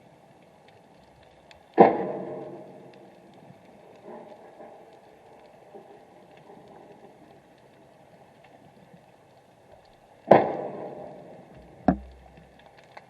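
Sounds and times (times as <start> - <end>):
faint crackle in water: 0.0 - 13.0
sharp knocks underwater: 10.3 - 12.7.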